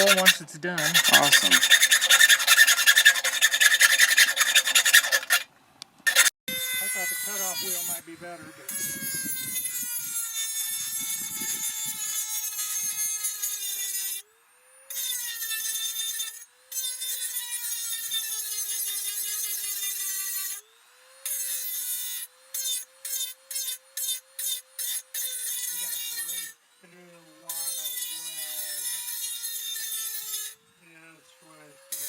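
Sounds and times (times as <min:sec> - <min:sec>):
rotary tool cutting wheel whining: 0:00.0 - 0:05.5, 0:06.1 - 0:30.6.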